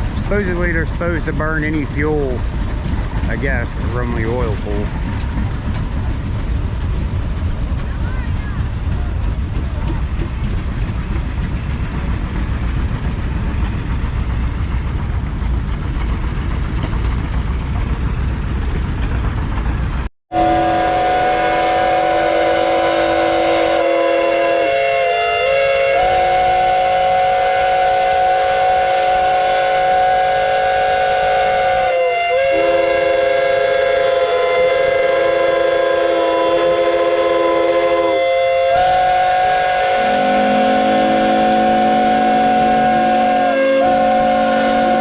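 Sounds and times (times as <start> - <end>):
low rumbling noise: 0.0 - 31.7.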